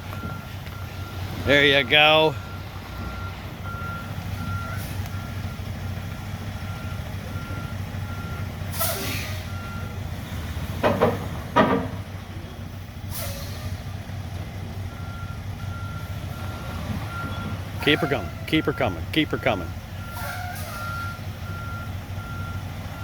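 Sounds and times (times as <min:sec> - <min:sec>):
diesel truck engine running: 0:00.0 - 0:23.0
backup alarm beeping: 0:00.1 - 0:05.7, 0:14.9 - 0:20.2
air brake hissing: 0:08.7 - 0:09.6, 0:13.1 - 0:13.9, 0:20.1 - 0:20.9.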